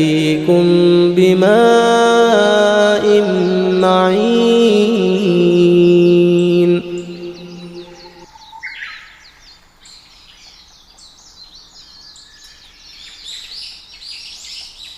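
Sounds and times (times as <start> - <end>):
birds chirping and twittering: 0.0 - 14.9
harsh bird call: 3.0 - 9.4.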